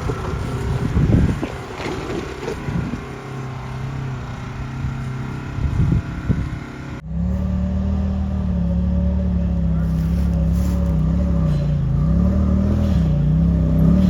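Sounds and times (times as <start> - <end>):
wind buffeting microphone: 0.0 - 7.0
vehicle engine running: 0.0 - 14.0.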